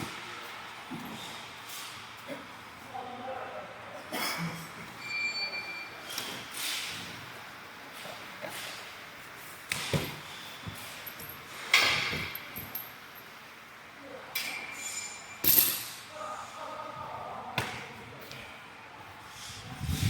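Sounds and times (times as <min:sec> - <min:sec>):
metallic knocks and clinks: 0:10.7 - 0:13.3, 0:14.4 - 0:16.0.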